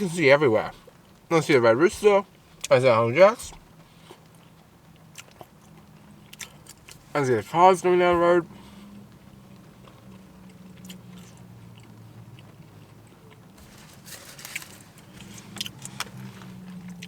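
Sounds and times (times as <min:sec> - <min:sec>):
person chewing crunchy food: 0:03.6 - 0:07.1, 0:08.5 - 0:17.0.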